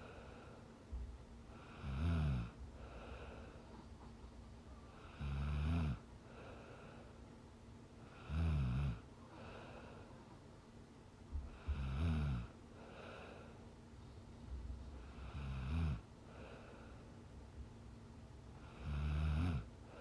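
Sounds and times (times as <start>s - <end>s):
soft breathing: 0.0s - 5.4s, 6.2s - 8.4s, 9.0s - 19.0s, 19.6s - 20.0s
woman snoring: 1.6s - 3.2s, 5.0s - 6.0s, 8.1s - 9.0s, 11.6s - 12.5s, 15.2s - 16.0s, 18.6s - 19.7s.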